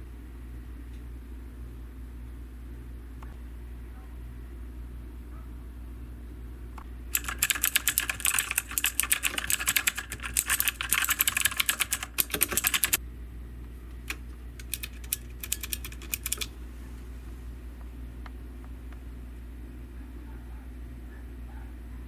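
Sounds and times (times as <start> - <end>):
mechanical keyboard typing: 7.1 - 13.0, 14.0 - 16.5.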